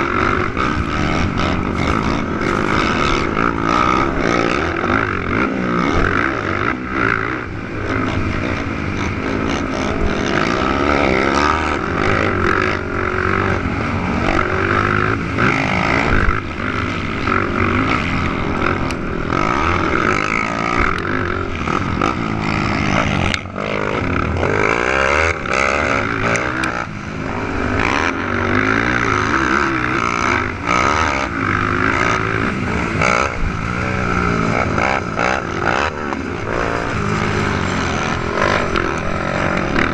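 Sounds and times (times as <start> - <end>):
racing quad engines revving: 0.0 - 39.9.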